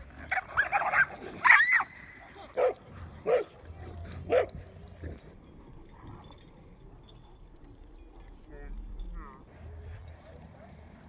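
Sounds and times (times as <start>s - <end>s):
dog yelping: 0.2s - 3.5s
dog barking: 2.5s - 3.5s, 4.3s - 4.5s.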